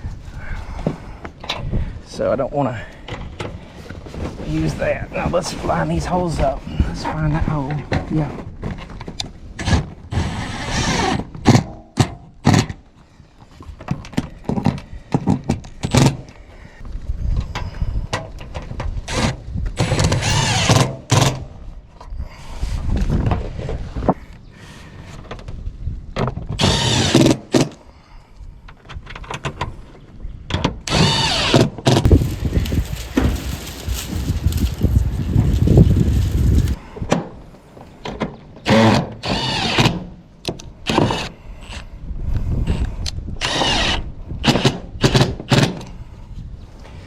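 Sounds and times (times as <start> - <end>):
power drill driving screws: 9.6 - 11.3, 19.1 - 21.4, 26.6 - 27.4, 30.9 - 32.0, 38.6 - 40.0, 43.4 - 45.7.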